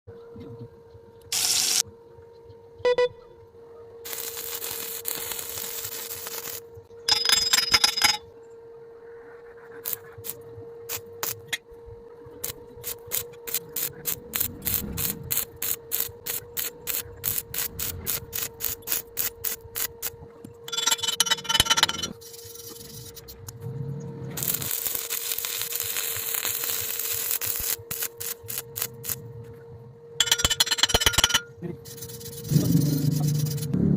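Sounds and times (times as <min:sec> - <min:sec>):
faint steady hum: 0:00.1 - 0:33.9
welding hissing crackle: 0:01.3 - 0:01.8, 0:04.0 - 0:06.9, 0:09.6 - 0:11.6, 0:12.2 - 0:21.0, 0:22.2 - 0:23.6, 0:24.2 - 0:29.4, 0:30.2 - 0:33.8.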